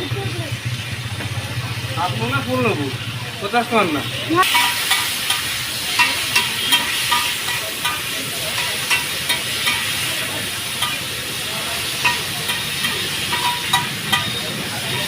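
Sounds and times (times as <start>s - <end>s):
noodles sizzling in a wok: 0.0s - 15.0s
metal spatula clinking on pan: 4.4s - 11.2s, 11.9s - 15.0s.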